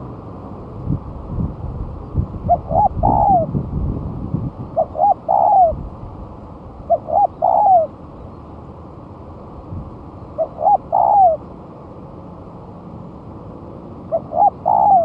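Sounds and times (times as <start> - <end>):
low rumbling noise: 0.0 - 15.0
dove cooing: 2.4 - 3.6, 4.6 - 5.8, 6.9 - 8.0, 10.4 - 11.5, 14.1 - 15.0.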